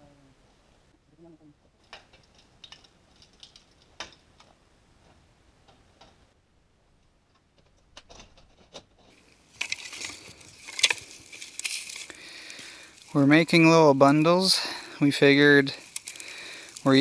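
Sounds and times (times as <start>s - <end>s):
brush rustling and crackling: 9.2s - 17.0s
twigs snapping and clicking: 9.2s - 17.0s.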